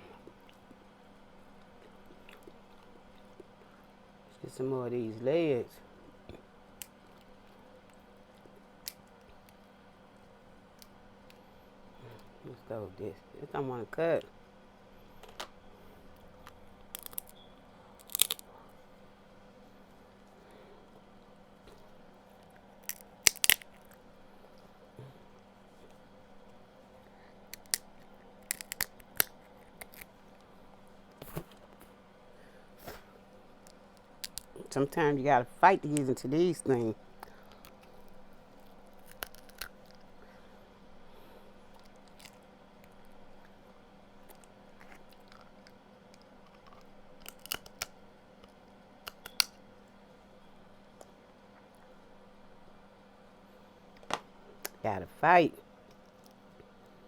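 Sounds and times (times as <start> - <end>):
shears cracking shellfish shells: 6.8 - 9.6, 16.3 - 18.5, 22.4 - 24.1, 27.4 - 30.5, 33.6 - 34.7, 37.1 - 40.2, 41.7 - 43.6, 44.2 - 49.6.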